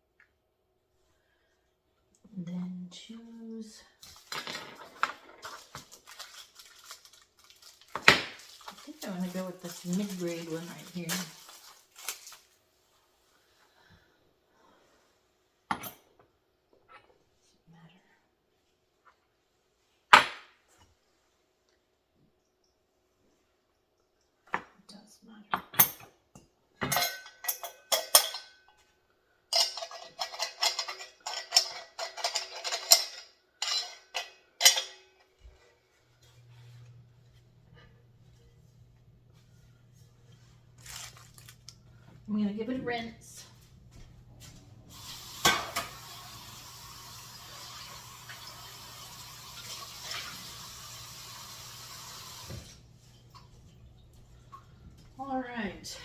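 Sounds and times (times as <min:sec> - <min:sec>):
metal parts clinking and clattering: 0:04.1 - 0:10.9, 0:29.5 - 0:35.1
tap water running: 0:05.6 - 0:12.4, 0:43.8 - 0:55.2
faint low hum: 0:34.8 - 0:45.0, 0:52.8 - 0:56.0.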